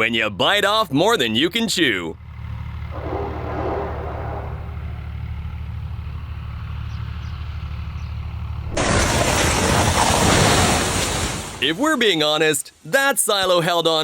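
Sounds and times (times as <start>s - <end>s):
engine rumbling: 0.9s - 10.4s
loud rushing noise: 2.9s - 5.5s.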